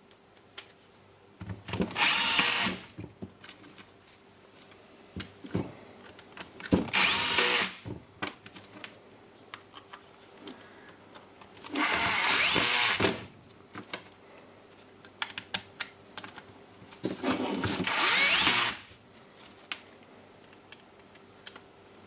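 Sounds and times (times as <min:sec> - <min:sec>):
cordless drill driving screws: 0:02.0 - 0:02.9, 0:06.9 - 0:07.8, 0:11.7 - 0:13.2, 0:17.8 - 0:18.9.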